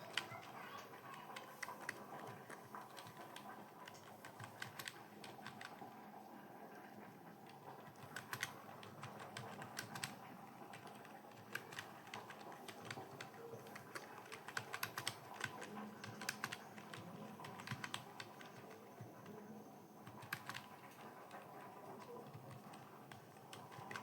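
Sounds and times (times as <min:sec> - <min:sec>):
faint steady hum: 0:00.0 - 0:24.0
keyboard key clicks: 0:08.0 - 0:18.8, 0:20.1 - 0:21.5.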